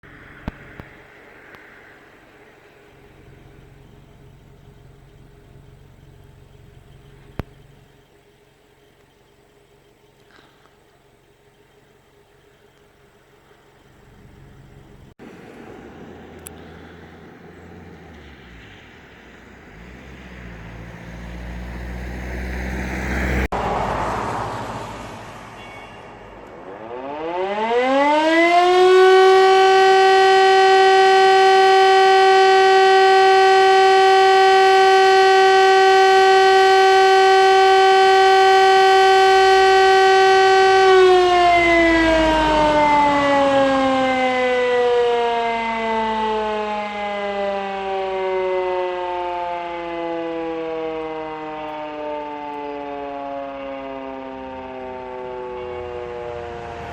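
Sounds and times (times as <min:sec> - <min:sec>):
vehicle passing: 0:00.0 - 0:08.0, 0:13.4 - 0:27.5, 0:35.8 - 0:47.7, 0:55.4 - 0:56.9
siren winding up and down: 0:26.4 - 0:56.9.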